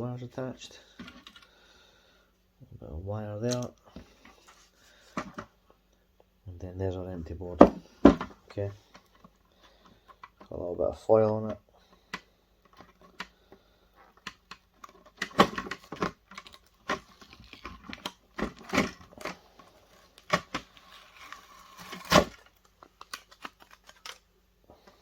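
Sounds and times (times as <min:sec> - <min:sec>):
foil crinkling and tearing: 0:15.3 - 0:24.3.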